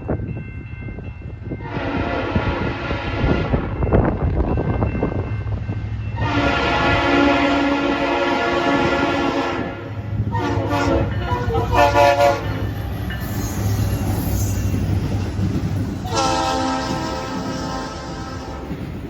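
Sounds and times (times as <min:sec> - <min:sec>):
diesel locomotives rumbling: 0:00.0 - 0:19.0
locomotive air horn blasts: 0:01.6 - 0:03.6, 0:06.2 - 0:12.6, 0:16.1 - 0:18.8.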